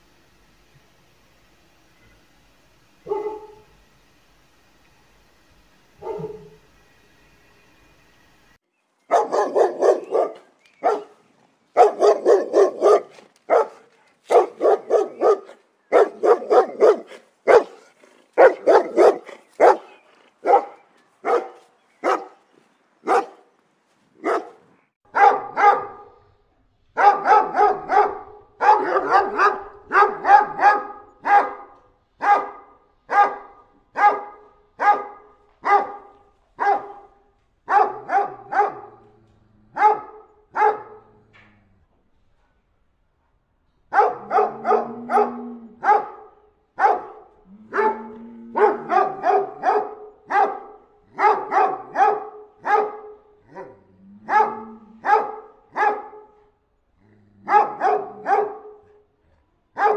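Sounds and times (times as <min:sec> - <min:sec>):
dog barking: 0:03.0 - 0:03.7, 0:06.0 - 0:06.6, 0:09.1 - 0:11.2, 0:11.8 - 0:22.4, 0:23.0 - 0:23.5, 0:24.2 - 0:26.2, 0:27.0 - 0:39.1, 0:39.8 - 0:41.2, 0:43.9 - 0:56.4, 0:57.4 - 0:59.0.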